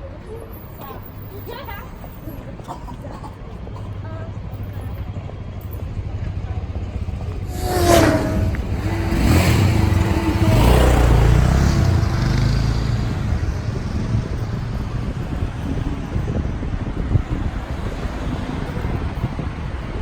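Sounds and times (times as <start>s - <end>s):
low rumble of passing traffic: 0.0s - 20.0s
vehicle passing close by: 7.0s - 19.6s.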